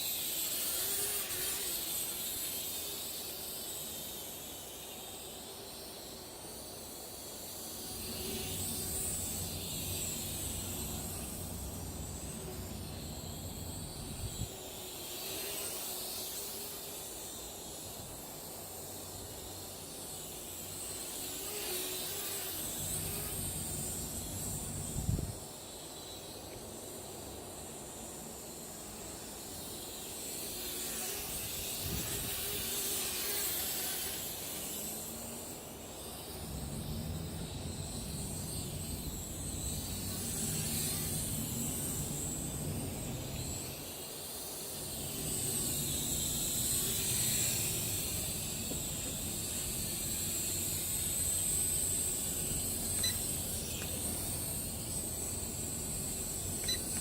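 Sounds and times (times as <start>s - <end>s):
quadcopter motors whining: 0.0s - 26.5s, 29.2s - 57.0s
wind rumbling on microphone: 24.6s - 25.4s.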